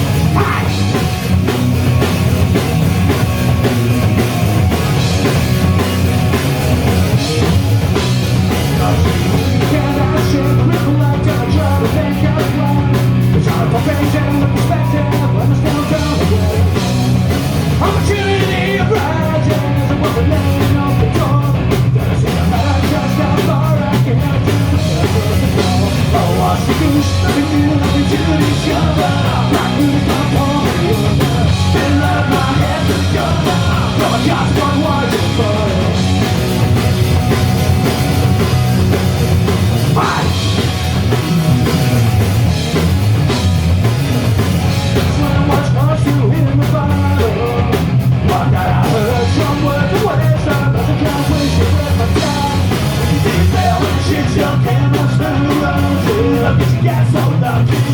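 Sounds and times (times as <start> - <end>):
punk rock band playing live: 0.0 - 57.9
person singing: 8.7 - 16.8, 17.8 - 21.6, 22.3 - 36.0, 39.9 - 40.6, 45.0 - 57.9.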